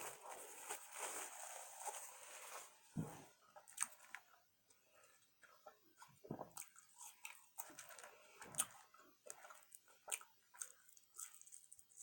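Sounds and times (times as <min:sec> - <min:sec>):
person chewing food: 0:03.4 - 0:12.0.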